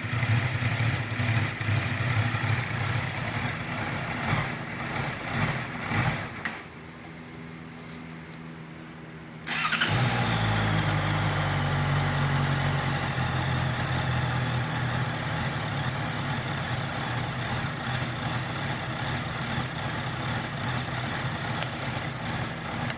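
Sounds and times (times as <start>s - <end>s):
motorcycle engine starting: 0.0s - 6.8s, 9.4s - 22.9s
motorcycle engine idling: 0.0s - 6.9s, 9.5s - 22.9s.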